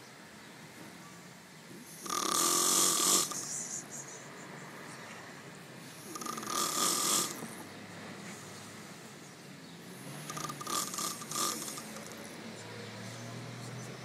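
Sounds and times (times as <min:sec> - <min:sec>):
man snoring loudly: 0:01.8 - 0:03.7, 0:06.0 - 0:07.7, 0:10.0 - 0:12.3.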